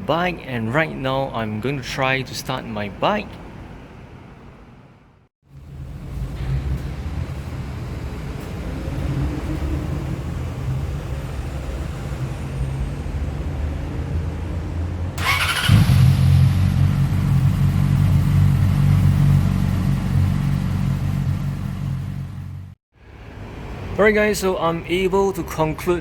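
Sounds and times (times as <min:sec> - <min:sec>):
low engine rumble: 0:05.5 - 0:11.9, 0:14.6 - 0:23.9
motorcycle electric starter whirring: 0:15.2 - 0:17.0
motorcycle engine idling: 0:15.2 - 0:22.7.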